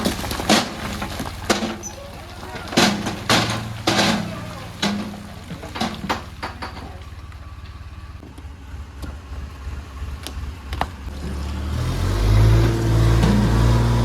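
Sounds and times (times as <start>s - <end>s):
sharp metal clanks: 0.0s - 7.1s
diesel engine running: 0.0s - 14.0s.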